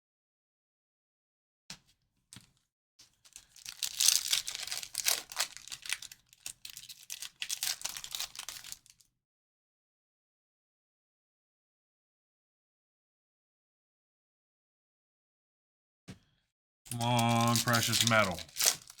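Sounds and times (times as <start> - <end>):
foil wrapper tearing and crinkling: 3.3 - 9.0, 16.9 - 19.0.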